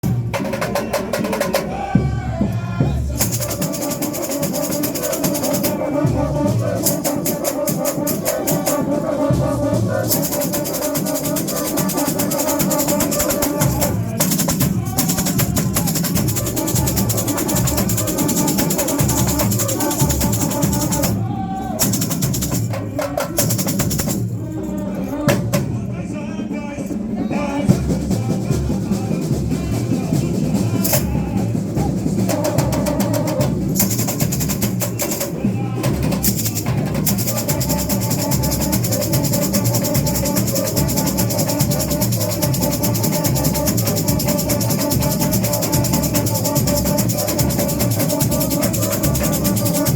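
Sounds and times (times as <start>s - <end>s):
fast snare drums: 0.0s - 24.4s, 27.6s - 49.9s
shakers: 3.1s - 25.5s, 32.3s - 35.4s, 36.0s - 49.9s.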